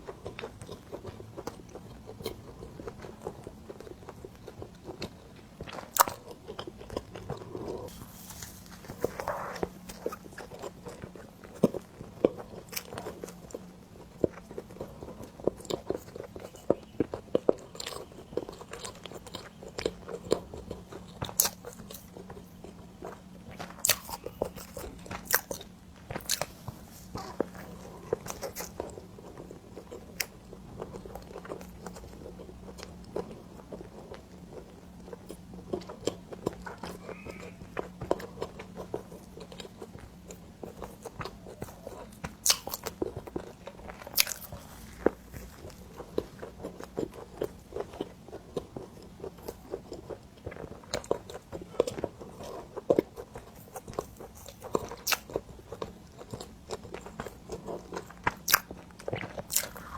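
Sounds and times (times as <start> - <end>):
chewing and biting bread: 0.0 - 59.9
faint low hum: 0.0 - 59.9
wet mouth clicks: 55.1 - 55.3.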